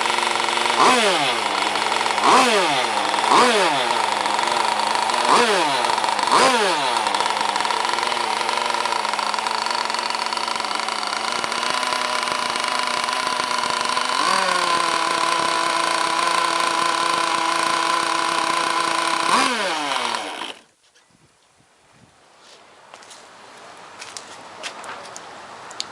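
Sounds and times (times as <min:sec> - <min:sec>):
two-stroke boat engine revving: 0:00.0 - 0:20.7.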